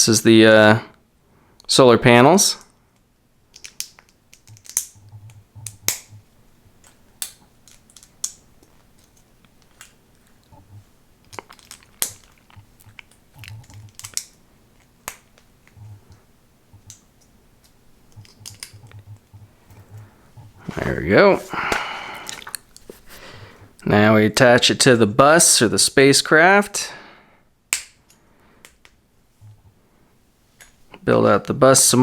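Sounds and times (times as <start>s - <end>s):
plastic bricks clicking together: 3.5s - 5.0s, 6.8s - 10.0s, 11.2s - 15.8s, 16.9s - 19.0s.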